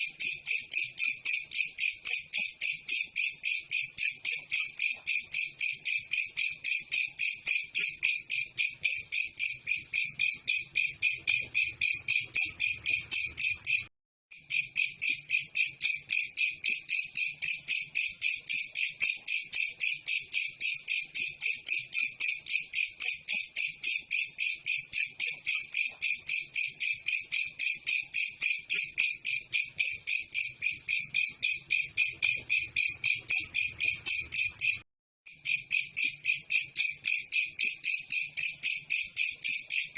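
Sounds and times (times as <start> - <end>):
katydid chirping: 7.2 - 13.9, 28.7 - 36.1.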